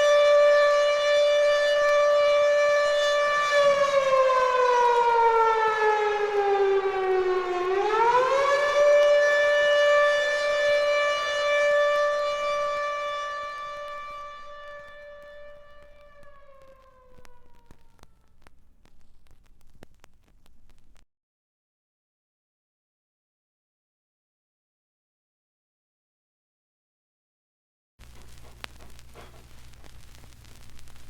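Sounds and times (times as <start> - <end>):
warning siren wailing: 0.0 - 18.6.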